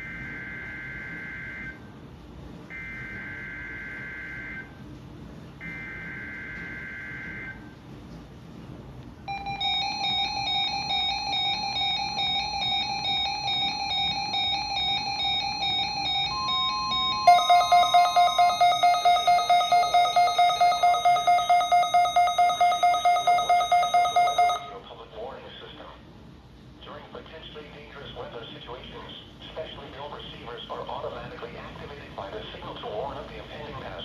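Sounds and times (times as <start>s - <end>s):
pulsing alarm tone: 0.0s - 1.8s, 2.7s - 4.8s, 5.6s - 7.7s, 9.3s - 24.8s
electronic data warble: 9.3s - 24.7s
electronic attention tone: 9.3s - 24.8s.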